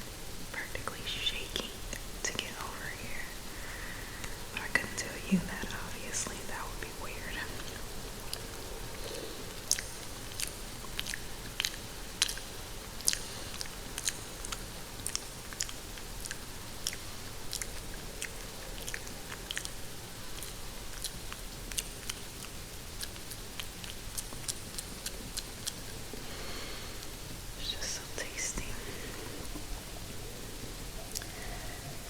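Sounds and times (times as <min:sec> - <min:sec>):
mouth clicks and crunches: 0:07.5 - 0:31.9.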